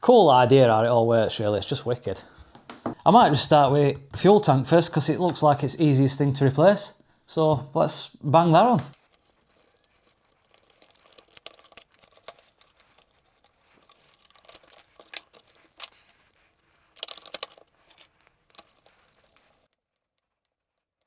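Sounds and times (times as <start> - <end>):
crinkling rustles: 8.6 - 21.0
small parts clicking: 8.9 - 21.0.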